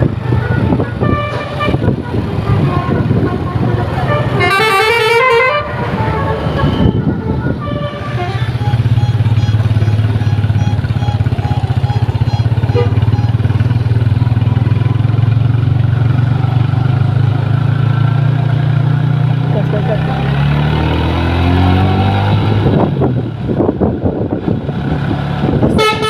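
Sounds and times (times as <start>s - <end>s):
vehicle engine running: 0.0s - 26.0s
bus multi-tone horn: 0.2s - 14.2s, 25.6s - 26.0s.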